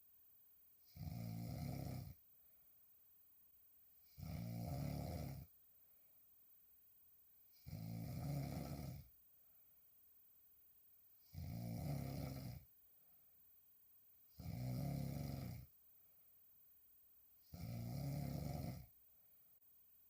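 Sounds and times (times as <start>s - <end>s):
woman snoring: 0.9s - 2.2s, 4.2s - 5.5s, 7.6s - 9.1s, 11.3s - 12.7s, 14.4s - 15.7s, 17.5s - 18.9s.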